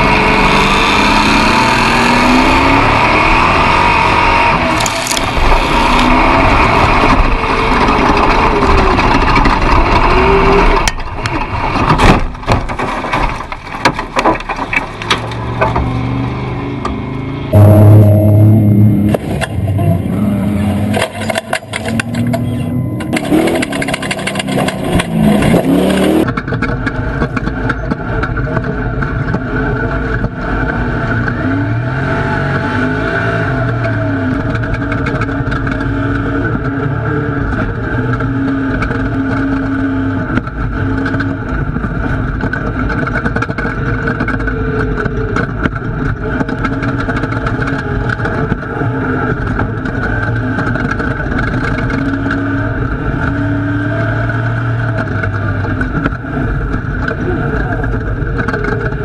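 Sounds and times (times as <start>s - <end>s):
truck engine revving: 0.0s - 10.9s, 15.0s - 26.3s, 30.4s - 59.0s.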